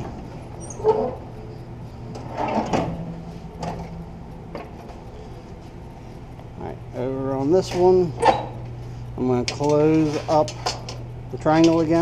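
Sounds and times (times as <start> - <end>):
steady low hum: 0.0 - 12.0
metal scraping rustle: 2.1 - 4.0.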